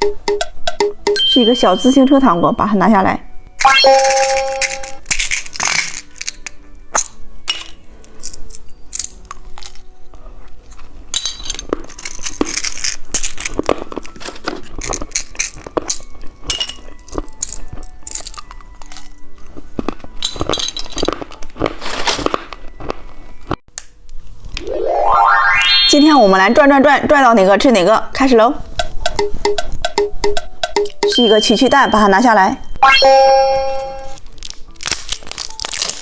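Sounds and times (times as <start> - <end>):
soft background music: 0.0 - 36.0
plastic packaging crinkling: 4.1 - 23.6, 34.2 - 36.0.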